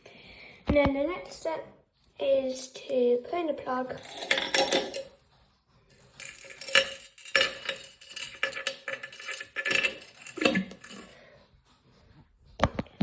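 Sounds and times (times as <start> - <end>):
plastic toys clattering: 3.8 - 5.3, 5.9 - 11.2.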